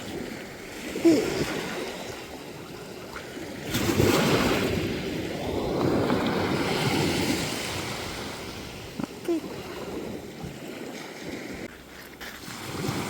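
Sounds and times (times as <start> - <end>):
sea waves washing onto beach: 0.0 - 13.0.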